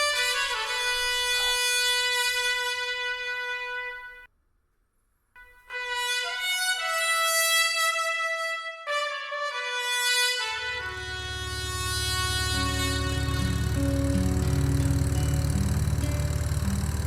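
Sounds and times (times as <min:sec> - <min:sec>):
brass-like melody: 0:00.0 - 0:04.3, 0:05.4 - 0:17.0
low steady drone: 0:10.8 - 0:17.0
strings: 0:10.8 - 0:17.0.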